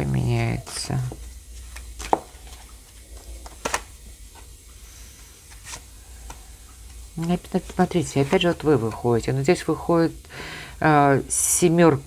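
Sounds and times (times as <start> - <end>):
low steady hum: 0.0 - 12.0
cards tapping and flicking: 0.6 - 4.5.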